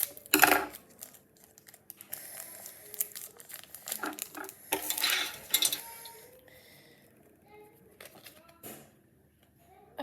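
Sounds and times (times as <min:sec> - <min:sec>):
foil wrapper crinkling: 0:00.0 - 0:06.3.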